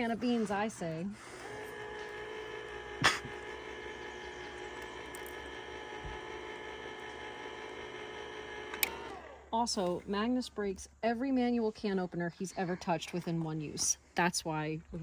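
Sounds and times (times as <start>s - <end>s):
electric can opener humming: 0.0s - 10.5s
can opener click: 4.4s - 6.2s, 8.7s - 9.0s.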